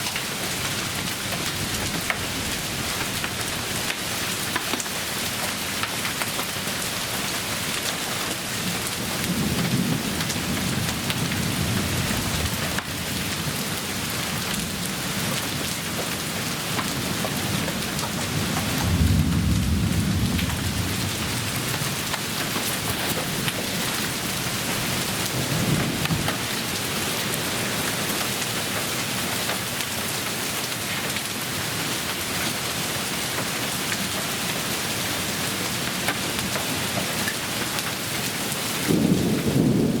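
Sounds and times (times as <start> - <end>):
heavy rain pouring: 0.0 - 40.0
thunder rumbling: 0.6 - 3.9, 17.4 - 26.5, 38.9 - 40.0.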